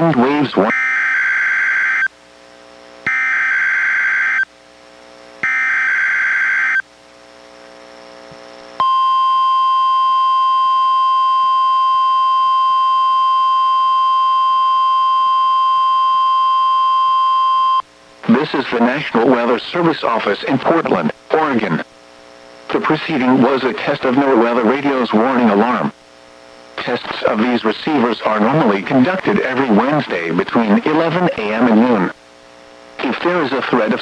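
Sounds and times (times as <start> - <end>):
steady warning alarm tone: 0.7 - 2.1, 3.1 - 4.5, 5.4 - 6.8, 8.8 - 17.8
digital data bursts: 26.8 - 32.1.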